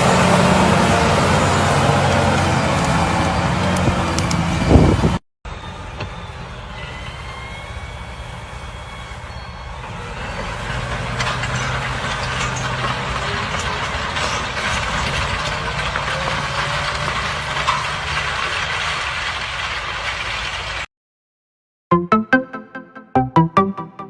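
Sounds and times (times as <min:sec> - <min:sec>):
heavy machinery engines running: 0:00.0 - 0:13.4.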